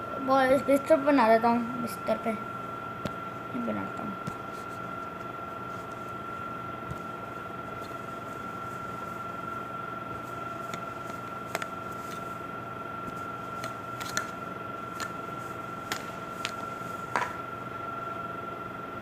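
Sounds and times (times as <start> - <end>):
room hum: 0.0 - 19.0
clay clicks and taps: 10.6 - 12.2, 13.1 - 14.4, 15.0 - 15.2, 15.9 - 17.4.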